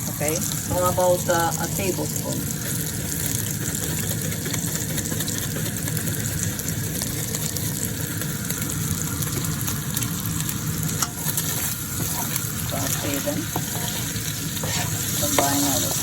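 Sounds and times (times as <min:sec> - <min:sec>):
chicken sizzling in oil: 0:00.0 - 0:16.0.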